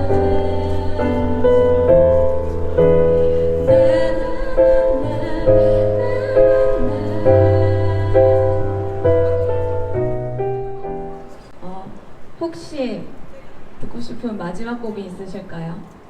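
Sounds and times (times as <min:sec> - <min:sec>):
bass chords: 0:00.0 - 0:11.2
piano chords: 0:00.0 - 0:11.6.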